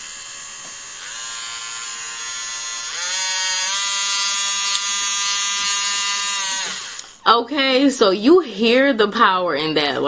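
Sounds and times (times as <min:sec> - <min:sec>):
electric nail drill whine: 0:00.0 - 0:07.2.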